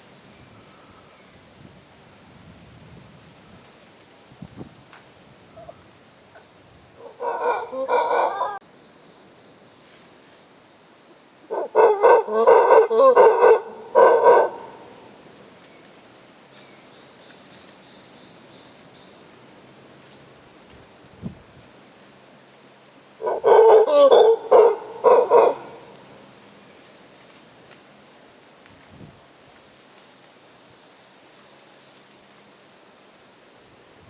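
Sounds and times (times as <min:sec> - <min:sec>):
monkeys calling: 0:07.0 - 0:08.6, 0:11.5 - 0:15.0, 0:23.2 - 0:26.0.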